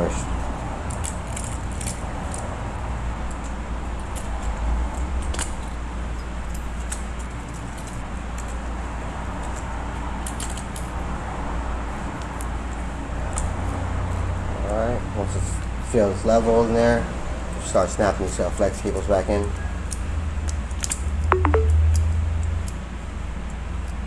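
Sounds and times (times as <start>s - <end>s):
light clicks and taps of small parts: 0.8s - 2.5s, 3.3s - 8.7s, 9.4s - 11.1s, 12.2s - 13.6s.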